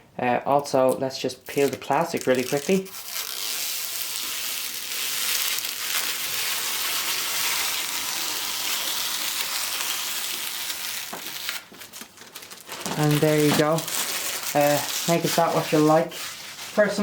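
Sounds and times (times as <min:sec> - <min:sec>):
plastic film peeling: 0:00.8 - 0:16.9.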